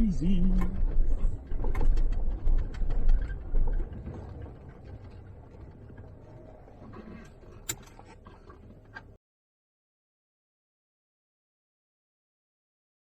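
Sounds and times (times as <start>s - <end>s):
vehicle low rumble: 0.0s - 9.2s.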